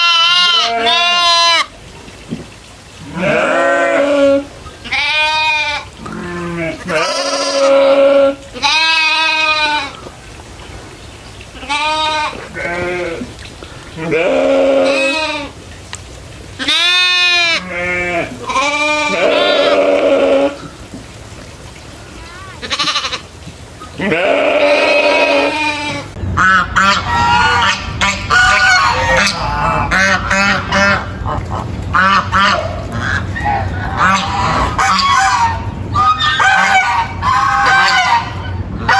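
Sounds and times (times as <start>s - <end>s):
goats bleating: 0.0s - 1.7s, 3.0s - 10.0s, 11.6s - 13.4s, 14.0s - 15.6s, 16.6s - 20.7s, 22.2s - 26.2s, 28.3s - 38.4s
geese honking: 22.6s - 38.9s.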